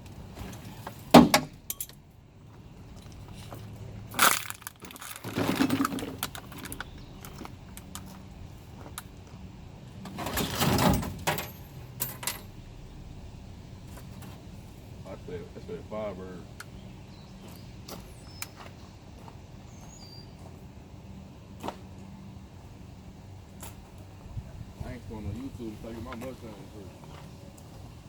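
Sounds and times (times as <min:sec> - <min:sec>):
hard objects clattering: 0:04.2 - 0:08.1.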